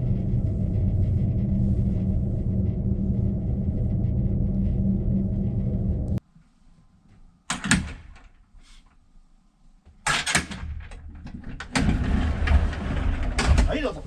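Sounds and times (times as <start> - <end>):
loud steady rush: 0.0 - 6.2.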